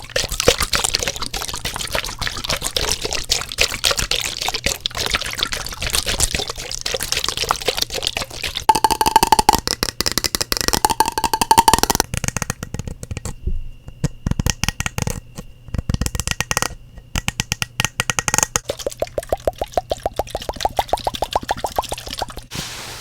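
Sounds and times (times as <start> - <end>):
rapid tapping on objects: 3.3 - 18.7.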